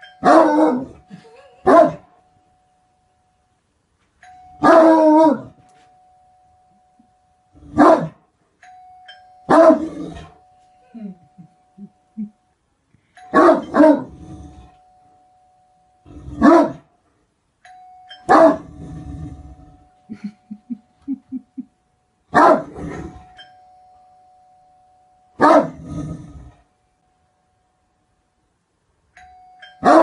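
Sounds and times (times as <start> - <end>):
faint steady tone: 0.0 - 22.4, 23.0 - 30.0
dog barking deeply: 16.4 - 16.8, 18.3 - 18.7, 22.4 - 22.9, 25.4 - 25.8.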